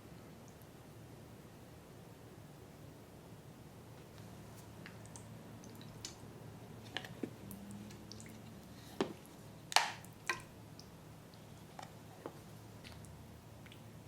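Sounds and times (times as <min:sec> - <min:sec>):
wet slime squishing and dripping: 0:04.6 - 0:11.9, 0:12.7 - 0:14.0.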